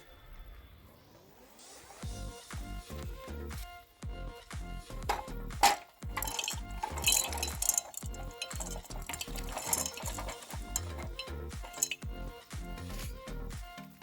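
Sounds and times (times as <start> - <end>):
background music: 0.0 - 14.0
metal scraping and clinking: 5.1 - 12.1.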